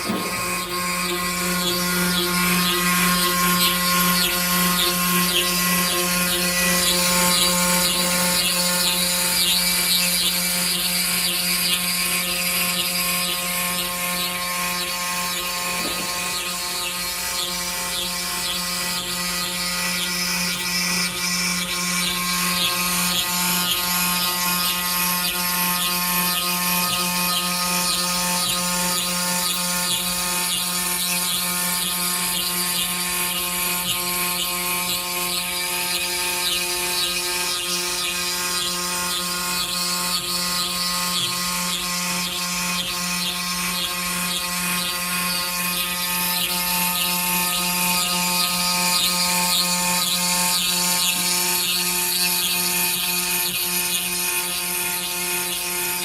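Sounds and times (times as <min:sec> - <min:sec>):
router spindle whine: 0:00.0 - 0:56.0
stone cutting noise: 0:00.0 - 0:56.0.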